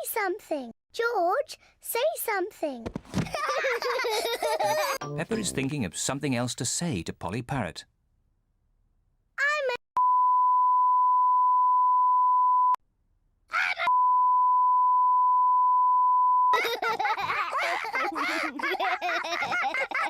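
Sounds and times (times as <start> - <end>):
cartoon children laughing: 3.2 - 5.6, 16.6 - 20.0
person speaking: 5.0 - 7.7
censor bleeps: 10.0 - 12.8, 13.9 - 16.6.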